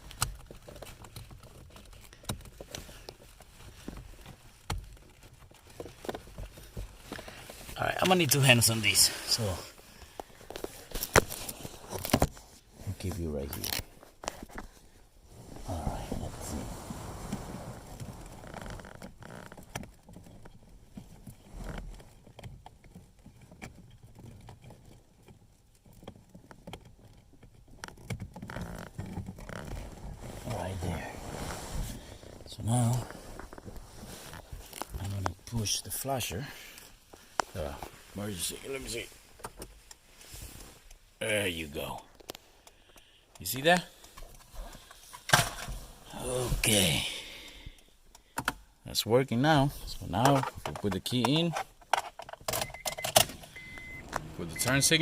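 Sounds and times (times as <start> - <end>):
clicks and taps among wiring: 0.0 - 8.5, 50.1 - 53.3.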